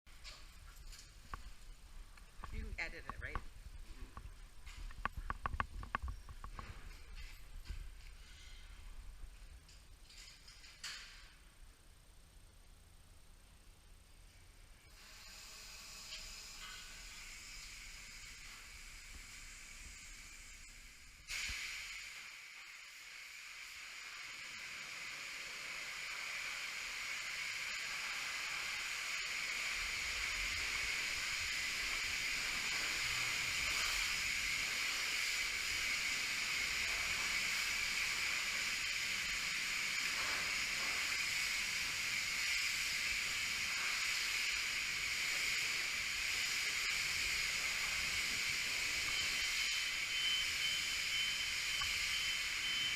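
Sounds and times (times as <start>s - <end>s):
pressure wand spraying water: 14.9s - 52.9s.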